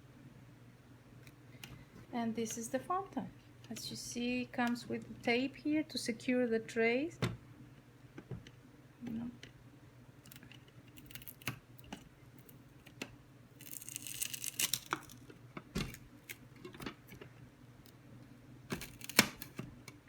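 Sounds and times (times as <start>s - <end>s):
adhesive tape peeling off plastic: 13.6s - 15.2s, 18.7s - 19.6s.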